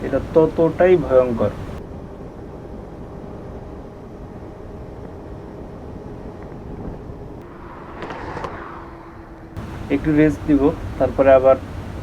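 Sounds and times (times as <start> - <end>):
wind rush on microphone: 0.0 - 12.0
motorcycle engine running: 9.5 - 12.0.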